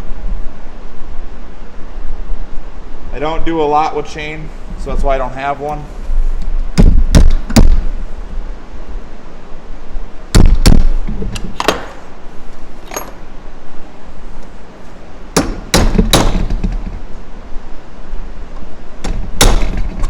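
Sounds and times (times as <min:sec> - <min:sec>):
hammer striking steel punch: 0:15.4 - 0:16.5.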